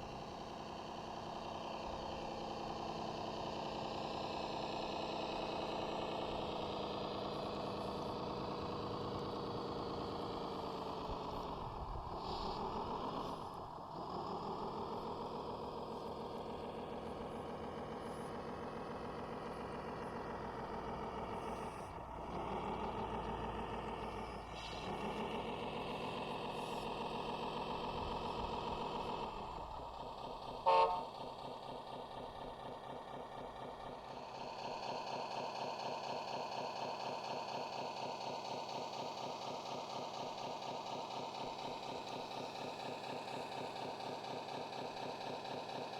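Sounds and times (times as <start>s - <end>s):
radio-controlled trucks running: 0.0s - 45.9s
short horn toot: 30.6s - 31.1s.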